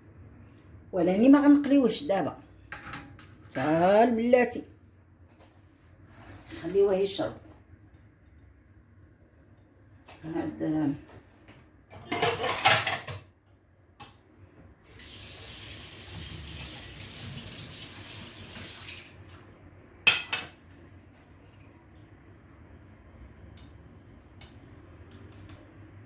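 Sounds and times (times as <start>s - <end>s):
dishes clattering: 11.9s - 13.3s, 20.1s - 20.6s.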